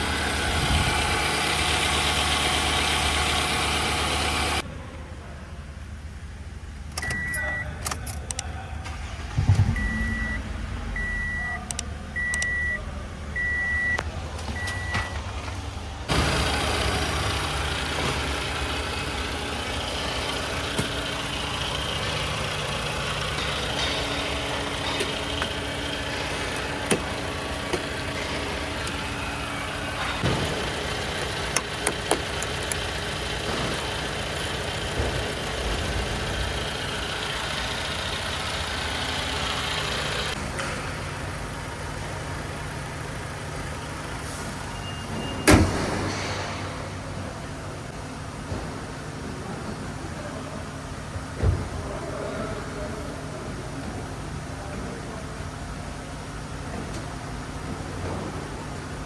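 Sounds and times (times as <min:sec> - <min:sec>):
car engine running: 0:00.0 - 0:04.6, 0:08.7 - 0:44.8
car warning chime beeping: 0:07.0 - 0:07.7, 0:09.7 - 0:15.1.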